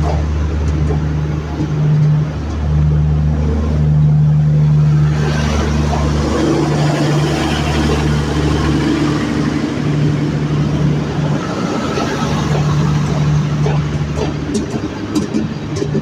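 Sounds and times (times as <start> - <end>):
train diesel engine humming: 0.0 - 16.0
train rumble and rattle: 0.0 - 16.0.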